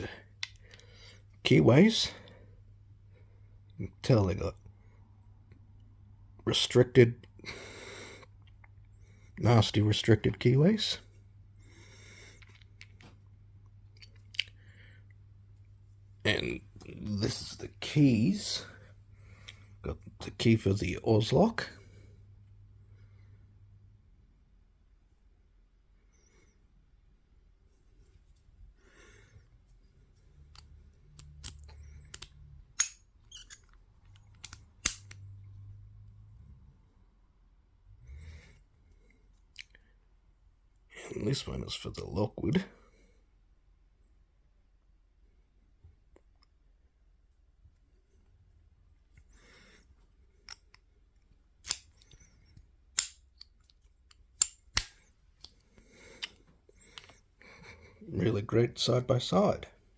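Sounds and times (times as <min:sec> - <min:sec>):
padlock clicks and snaps: 0:30.6 - 0:35.2, 0:52.9 - 0:55.0.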